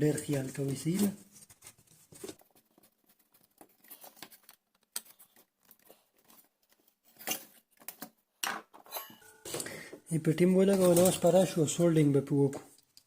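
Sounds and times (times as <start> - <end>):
hand tools clicking and scraping: 8.8 - 9.8.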